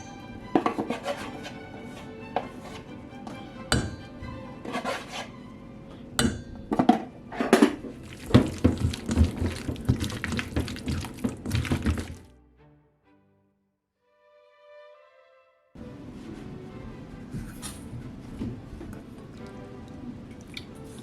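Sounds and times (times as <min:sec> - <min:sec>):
utensils clinking against a bowl: 0:00.0 - 0:02.8
background music: 0:00.0 - 0:08.2, 0:11.6 - 0:21.0.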